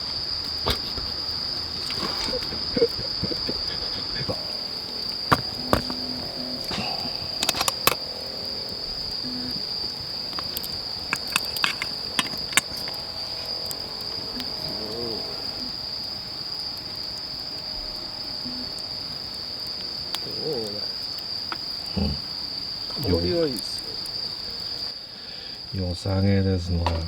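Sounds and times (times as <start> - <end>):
insects trilling: 0.0 - 27.0
sharp clicks: 5.2 - 8.0, 10.3 - 13.0.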